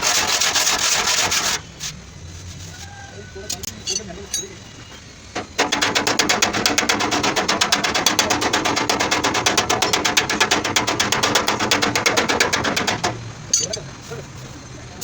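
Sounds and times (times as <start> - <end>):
fast tapping on sheet metal: 5.4 - 13.3.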